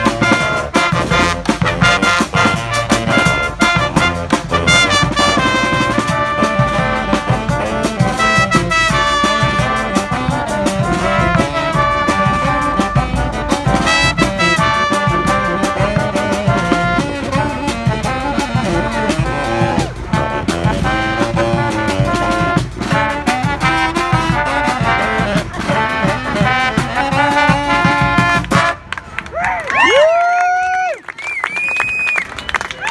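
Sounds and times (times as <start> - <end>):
percussion beat: 0.0 - 28.8
brass band playing: 0.0 - 29.3.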